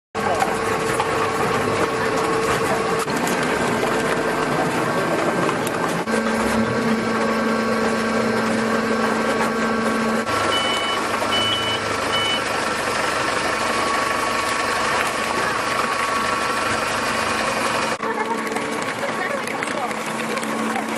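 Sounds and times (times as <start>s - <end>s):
baler machine humming: 0.2s - 20.9s
lower machine hum: 0.2s - 20.9s
short high beeps: 10.5s - 12.5s.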